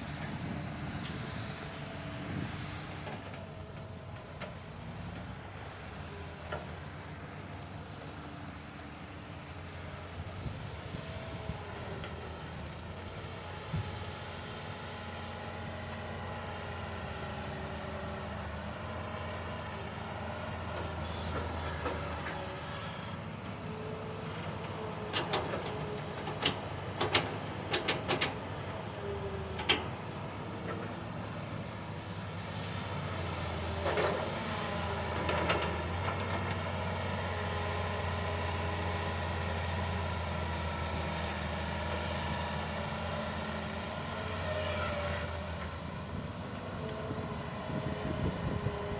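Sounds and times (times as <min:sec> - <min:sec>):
excavator diesel engine running: 0:00.0 - 0:48.9.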